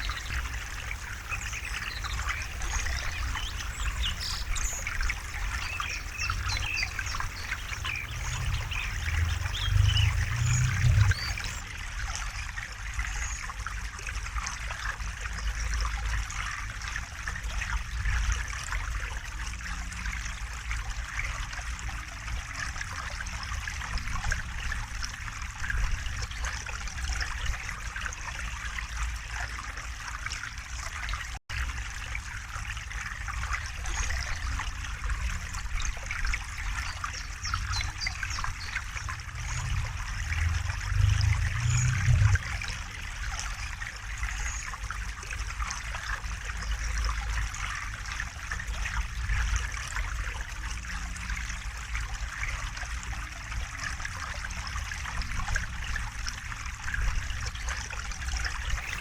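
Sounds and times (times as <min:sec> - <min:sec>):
low rumble: 0:00.0 - 0:11.6, 0:38.0 - 0:43.6
river water flowing: 0:00.0 - 0:12.1, 0:24.6 - 0:59.0.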